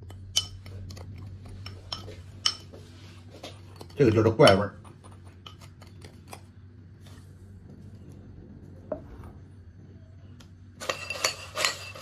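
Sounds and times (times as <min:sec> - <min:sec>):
low hum: 0:04.7 - 0:12.0
crisp rice rattling in a bowl: 0:10.8 - 0:12.0.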